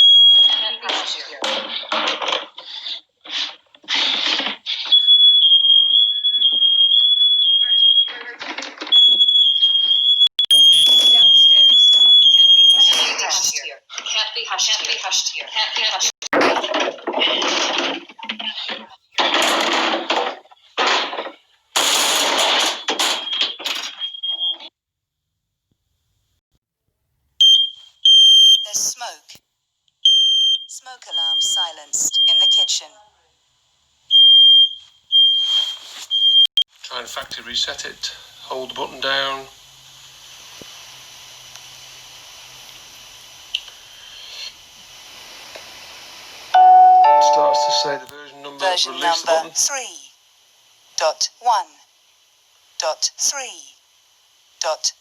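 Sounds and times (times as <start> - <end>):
smoke alarm beeping: 0.0 - 0.9, 4.9 - 8.2, 8.9 - 13.1, 27.4 - 28.7, 30.0 - 32.8, 34.1 - 36.5, 46.6 - 48.3
harsh rustling noise bursts: 35.4 - 36.2.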